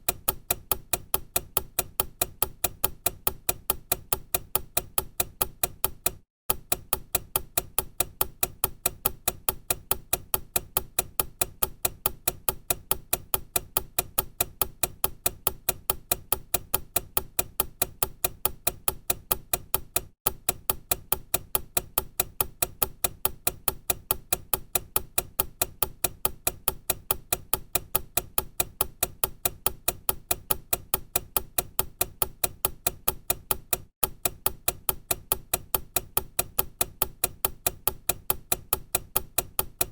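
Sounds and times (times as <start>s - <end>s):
clock ticking: 0.0s - 39.9s.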